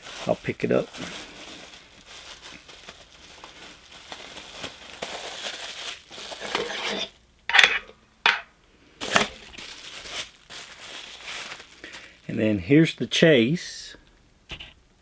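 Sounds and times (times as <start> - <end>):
plastic packaging crinkling: 0.0 - 7.2, 9.0 - 12.4.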